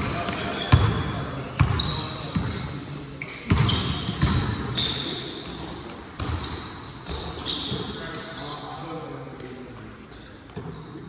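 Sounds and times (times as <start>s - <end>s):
sneakers squeaking on floor: 0.0s - 11.0s.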